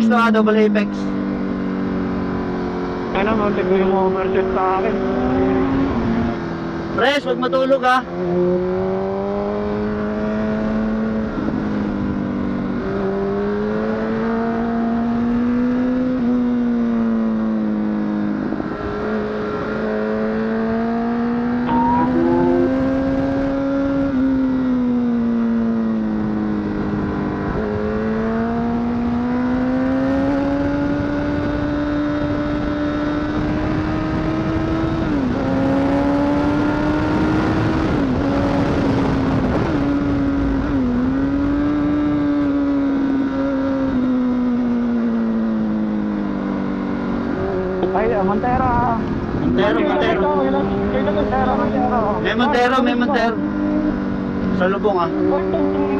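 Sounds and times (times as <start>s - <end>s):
motorcycle engine revving: 0.0s - 49.6s, 50.2s - 55.9s
wind noise: 21.5s - 24.6s, 29.6s - 44.1s.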